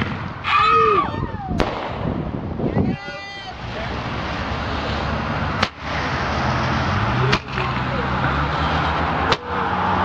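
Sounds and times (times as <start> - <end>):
firework sharp cracks: 0.0 - 0.4, 1.6 - 2.4, 5.5 - 6.2, 7.3 - 7.8.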